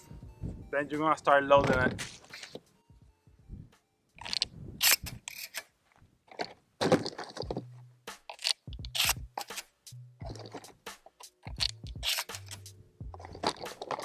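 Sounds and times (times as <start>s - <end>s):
shotgun metallic clicks and scrapes: 1.8s - 2.7s, 4.2s - 14.0s.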